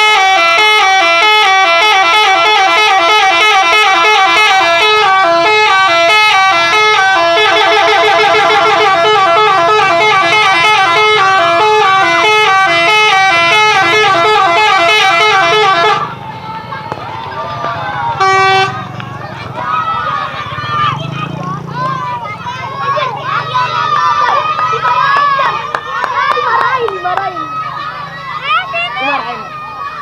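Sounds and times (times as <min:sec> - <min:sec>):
multi-tone musical air horns: 0:00.0 - 0:16.2, 0:18.1 - 0:18.9.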